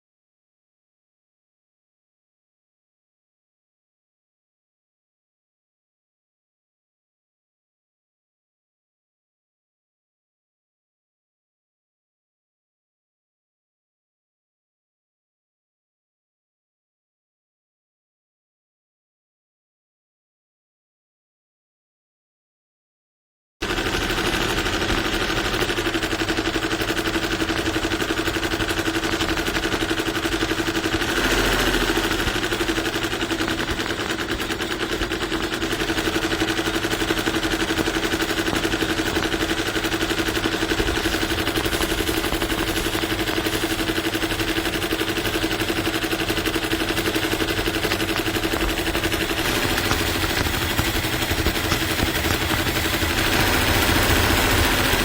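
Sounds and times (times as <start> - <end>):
embroidery machine stitching: 23.6 - 55.0.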